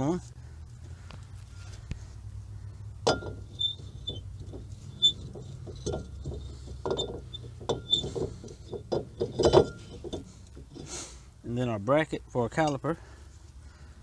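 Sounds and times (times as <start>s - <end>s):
steady low hum: 0.0s - 14.0s
metal clinks and knocks: 3.0s - 11.0s.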